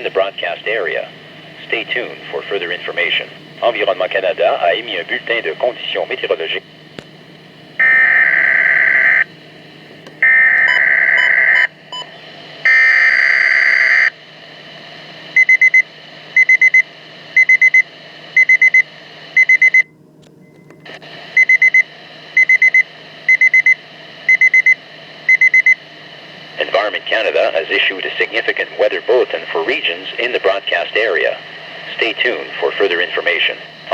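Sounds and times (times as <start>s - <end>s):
low electrical hum: 0.0s - 33.9s
radio alarm beeping: 7.8s - 9.3s, 10.2s - 14.1s, 15.4s - 19.9s, 20.5s - 25.8s.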